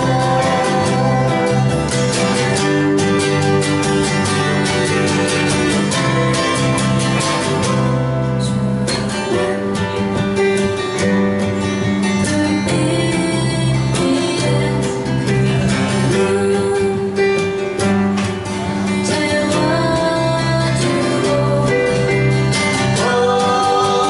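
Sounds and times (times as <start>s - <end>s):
person singing: 0.0s - 3.0s, 11.6s - 17.8s, 18.6s - 24.0s
strummed acoustic guitar: 0.0s - 24.0s.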